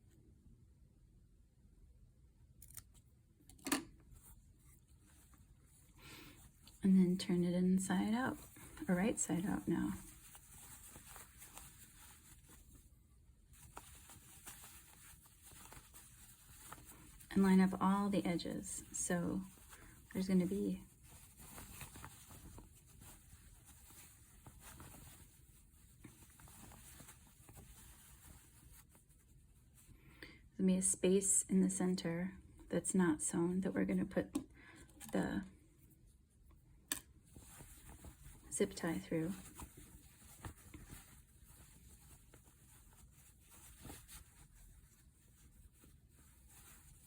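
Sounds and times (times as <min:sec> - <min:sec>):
cloth rustling: 0:04.0 - 0:30.0, 0:37.2 - 0:47.0.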